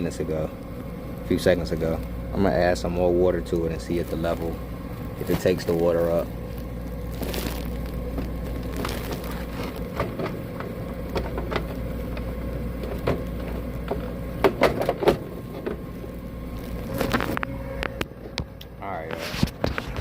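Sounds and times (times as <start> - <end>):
pump humming: 0.0 - 20.0.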